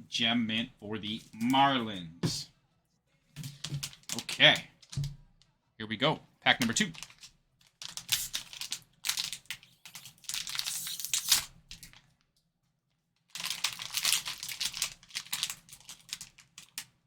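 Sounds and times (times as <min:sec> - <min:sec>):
wrapper tearing and crinkling: 0:06.8 - 0:12.0, 0:13.3 - 0:16.9.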